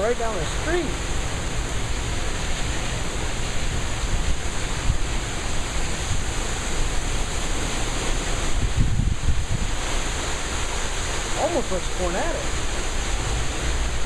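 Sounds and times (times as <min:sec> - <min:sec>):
driven rain: 0:00.0 - 0:14.0
wind gusting: 0:00.0 - 0:14.0
wind buffeting microphone: 0:00.6 - 0:11.6.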